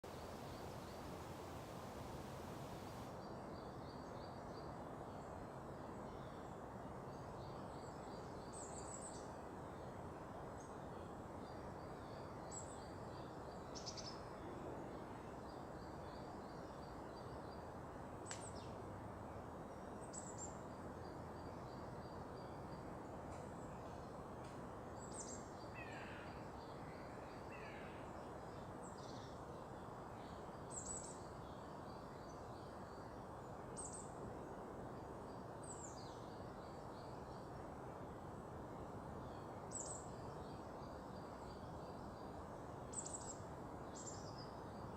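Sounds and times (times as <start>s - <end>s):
low rushing background noise: 0.0s - 44.9s.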